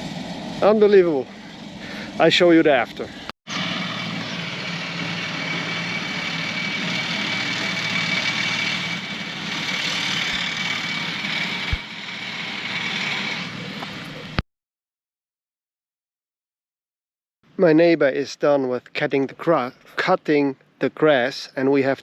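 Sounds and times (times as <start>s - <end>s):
tractor engine running: 0.0s - 14.4s.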